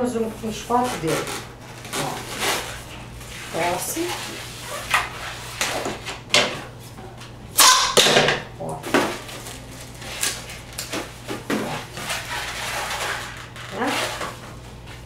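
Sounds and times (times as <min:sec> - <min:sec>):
rubber balloon squeaking: 0:00.7 - 0:02.7, 0:04.4 - 0:05.4, 0:11.5 - 0:14.4.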